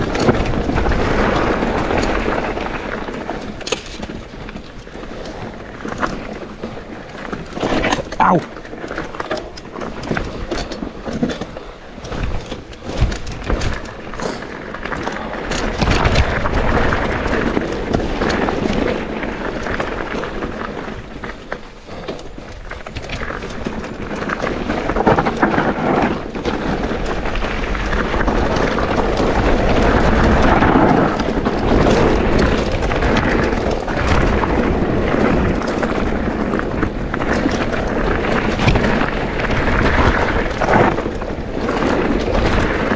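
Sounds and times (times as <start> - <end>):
bike tyres rolling and rattling: 0.0 - 42.9
wind rumbling on microphone: 0.0 - 42.9.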